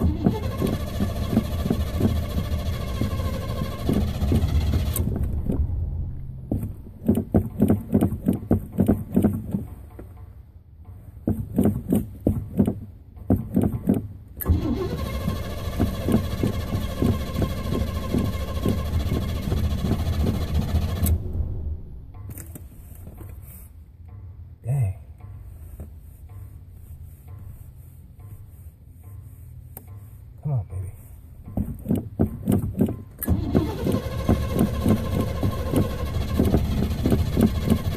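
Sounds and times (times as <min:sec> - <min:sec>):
car engine cranking on starter: 0:00.0 - 0:09.7, 0:13.5 - 0:22.6, 0:31.7 - 0:37.9.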